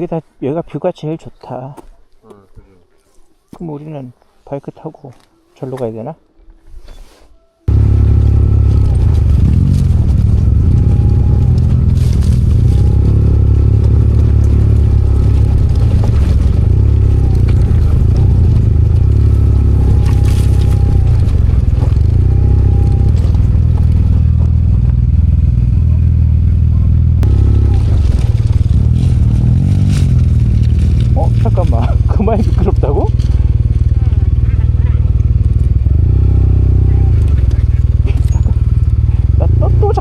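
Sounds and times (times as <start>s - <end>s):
wind rumble on microphone: 7.7s - 39.2s
scooter engine drone: 7.7s - 40.0s.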